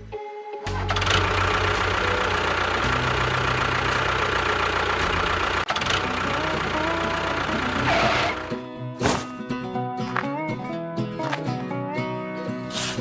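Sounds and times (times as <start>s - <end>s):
engine running with knocking: 0.7s - 8.6s.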